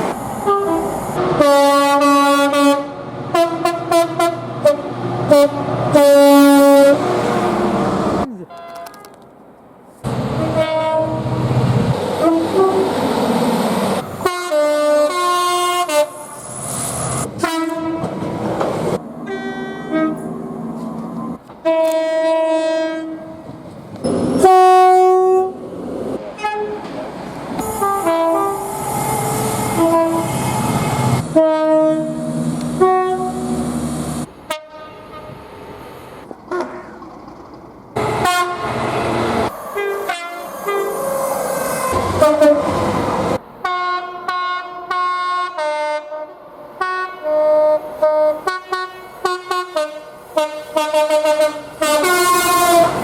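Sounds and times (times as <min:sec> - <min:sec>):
train horn blasts: 0:00.5 - 0:07.8, 0:10.4 - 0:11.2, 0:12.2 - 0:12.9, 0:14.2 - 0:16.3, 0:17.4 - 0:18.1, 0:19.2 - 0:20.3, 0:21.6 - 0:23.3, 0:24.0 - 0:25.6, 0:26.4 - 0:26.9, 0:27.6 - 0:33.6, 0:34.5 - 0:35.4, 0:38.0 - 0:39.1, 0:39.8 - 0:41.2, 0:41.8 - 0:43.0, 0:43.6 - 0:53.0.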